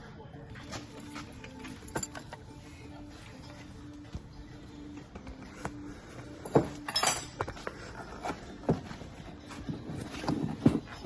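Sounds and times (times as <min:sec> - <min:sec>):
metal tools clinking and knocking: 0:01.4 - 0:02.6, 0:06.4 - 0:07.6.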